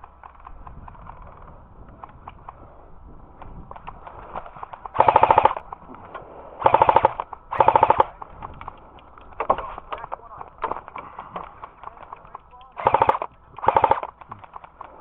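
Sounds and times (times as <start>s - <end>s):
airsoft rifle full-auto bursts: 4.9s - 5.6s, 6.6s - 8.2s, 12.7s - 14.5s.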